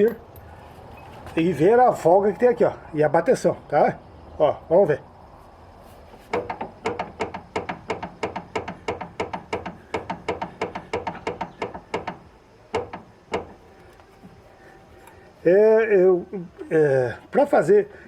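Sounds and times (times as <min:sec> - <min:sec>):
tie rod end knocking: 0:06.3 - 0:13.6.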